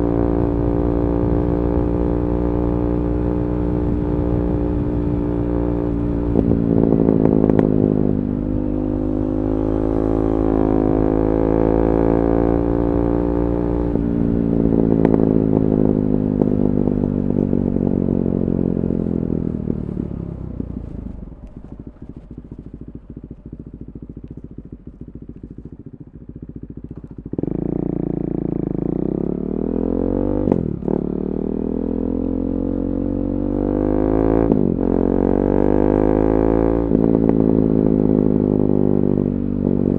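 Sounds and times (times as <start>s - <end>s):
exhaust crackling and popping: 0.0s - 12.0s, 13.8s - 28.8s, 36.8s - 39.9s
motorcycle engine revving: 0.0s - 39.9s.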